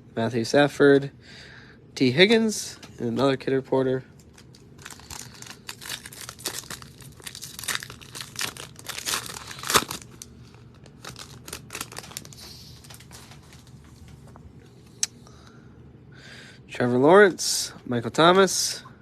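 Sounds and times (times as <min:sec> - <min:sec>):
foil wrapper tearing and crinkling: 0:04.3 - 0:13.7.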